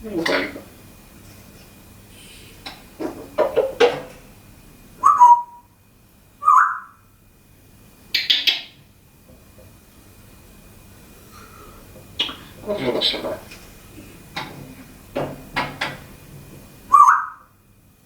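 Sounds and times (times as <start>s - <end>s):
parrot hissing: 2.1s - 2.6s
parrot whistling: 5.0s - 5.7s, 6.4s - 7.0s, 16.9s - 17.6s.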